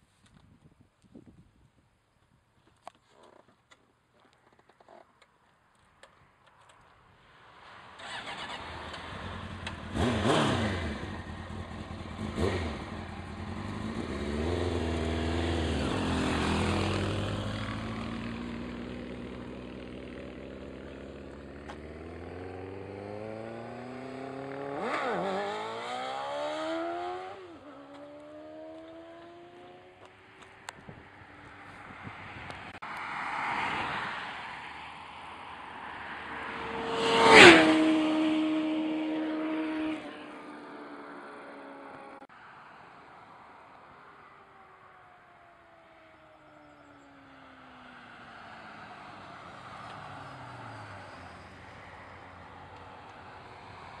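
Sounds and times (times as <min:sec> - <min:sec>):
motorcycle engine revving: 0:08.0 - 0:30.1, 0:36.5 - 0:42.2.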